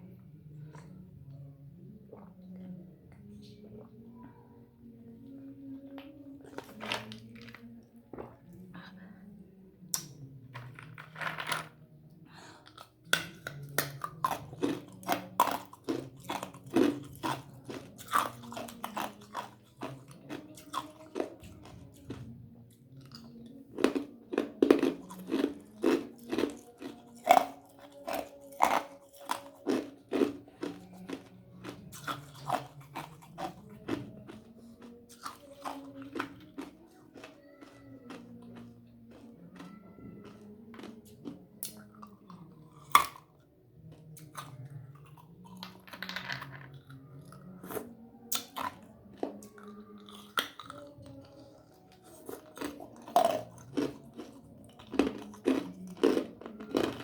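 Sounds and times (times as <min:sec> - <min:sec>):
person crunching ice: 0:23.8 - 0:31.3, 0:52.4 - 0:57.0.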